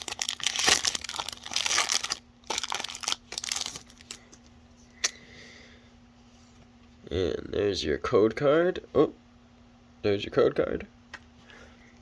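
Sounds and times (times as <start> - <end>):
foil wrapper crinkling and tearing: 0.0 - 4.3
cards crackling when handled: 0.0 - 4.4
faint steady hum: 0.0 - 12.0.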